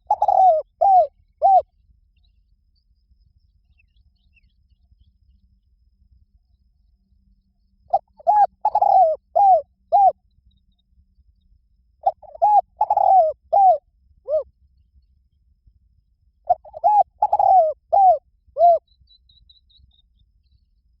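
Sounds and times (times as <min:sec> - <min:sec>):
dove cooing: 0:00.0 - 0:01.6, 0:07.9 - 0:10.2, 0:12.0 - 0:14.4, 0:16.5 - 0:18.8.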